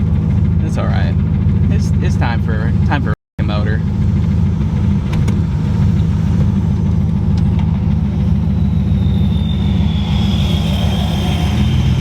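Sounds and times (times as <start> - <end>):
engine running: 0.0 - 12.0
faint high whine: 3.7 - 12.0.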